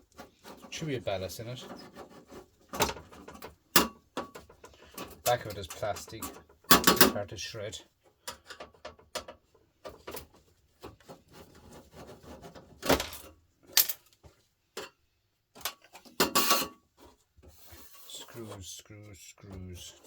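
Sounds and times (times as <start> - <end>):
parts clattering on metal: 1.6 - 7.4, 8.1 - 15.0, 15.6 - 18.0.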